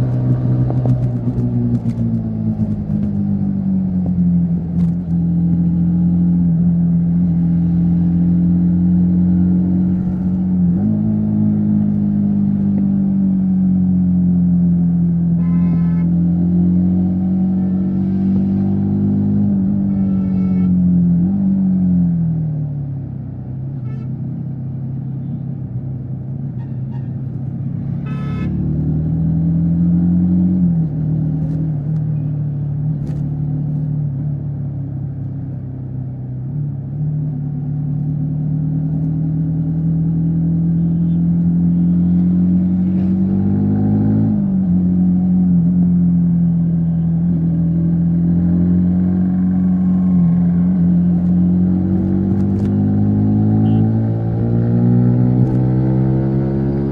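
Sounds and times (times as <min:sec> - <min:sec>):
vehicle horn toot: 0:15.4 - 0:16.2, 0:19.9 - 0:20.8, 0:23.8 - 0:24.2, 0:28.0 - 0:28.6, 0:40.8 - 0:41.9, 0:53.6 - 0:54.0
motorcycle engine at speed: 0:37.3 - 0:56.9.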